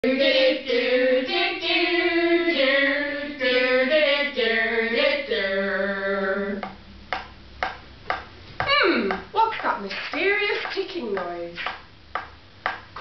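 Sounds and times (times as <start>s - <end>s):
young voices singing long notes: 0.0s - 6.9s.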